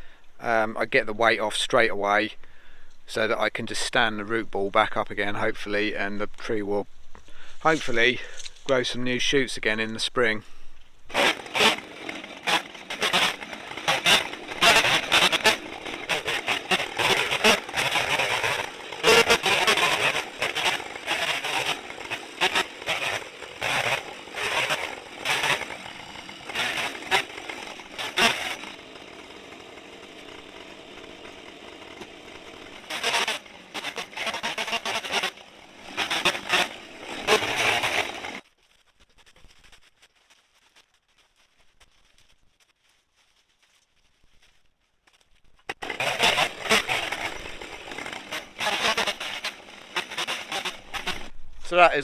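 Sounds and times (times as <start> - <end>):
chainsaw revving and idling: 11.1 - 38.4, 45.7 - 51.4.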